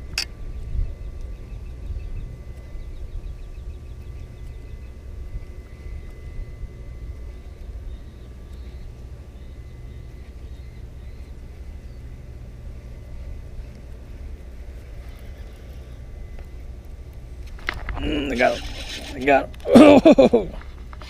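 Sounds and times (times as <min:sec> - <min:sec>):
steady low rumble: 0:00.0 - 0:21.0
faint bird chirps: 0:00.2 - 0:13.4.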